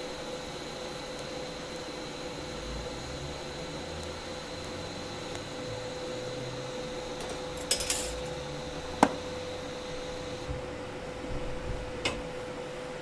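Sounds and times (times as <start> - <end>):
faint high whine: 0.0 - 10.6
steady hum: 0.0 - 13.0
metal pieces clinking: 7.6 - 8.2.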